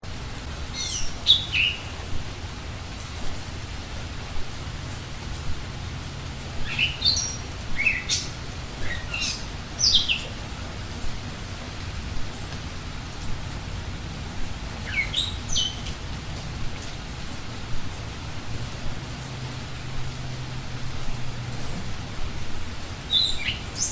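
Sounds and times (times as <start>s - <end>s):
steady rain: 0.0s - 23.9s
small birds chirping: 0.6s - 13.5s, 14.3s - 17.0s, 21.6s - 23.9s.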